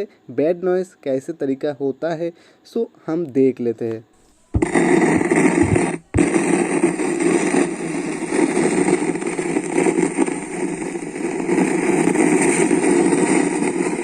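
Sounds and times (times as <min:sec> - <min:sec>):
speaker rough distorted noise: 0:04.2 - 0:14.0.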